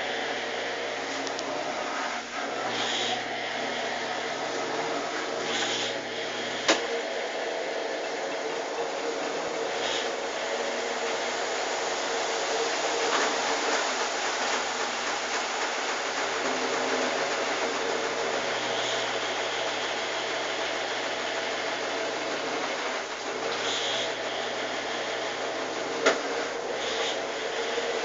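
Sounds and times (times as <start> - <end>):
washing machine spinning: 0.0 - 28.0
drain hose knocking: 8.0 - 28.0.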